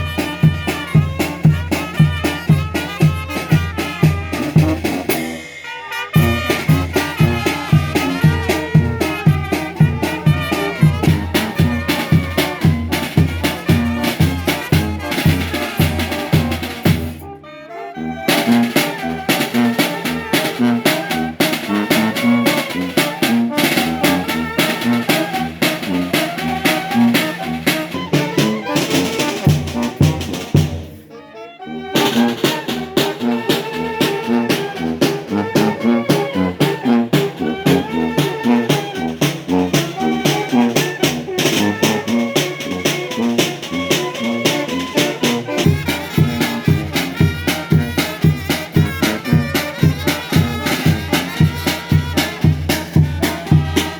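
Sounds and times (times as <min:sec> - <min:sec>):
brass band with drums playing: 0:00.0 - 0:53.9.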